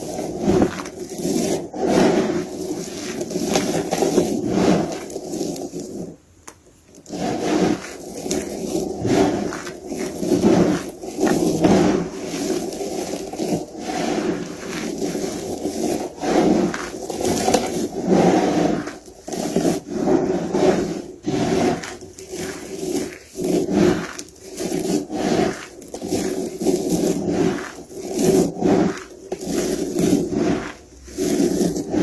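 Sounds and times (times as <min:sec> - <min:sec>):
soap being crushed and scraped: 0:00.0 - 0:32.0.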